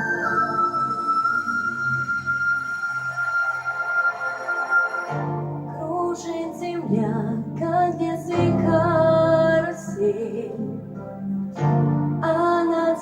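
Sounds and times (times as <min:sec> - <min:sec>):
instrumental accompaniment: 0:00.0 - 0:13.0
woman singing slow song: 0:05.8 - 0:10.8, 0:12.2 - 0:13.0.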